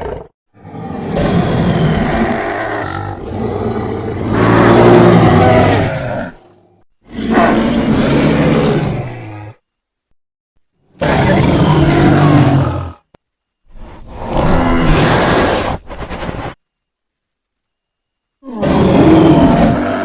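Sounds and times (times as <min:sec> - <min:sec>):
low dinosaur roar: 0:00.0 - 0:06.5, 0:07.1 - 0:09.6, 0:11.0 - 0:13.1, 0:14.0 - 0:15.7, 0:18.4 - 0:20.0.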